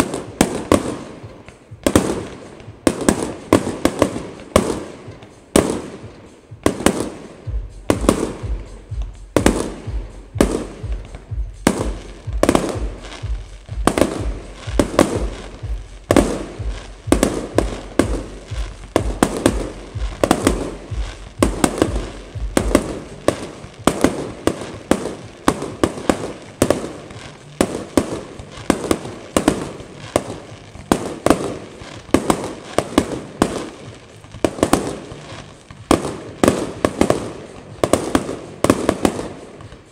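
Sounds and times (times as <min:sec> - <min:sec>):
low thumping pulse: 0:00.0 - 0:32.5
firework bangs and crackles: 0:00.0 - 0:39.9.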